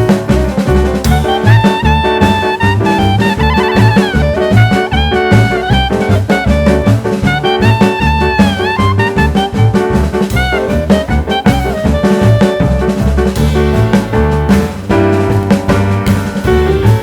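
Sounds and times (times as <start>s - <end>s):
upbeat jazz music: 0.0s - 17.0s.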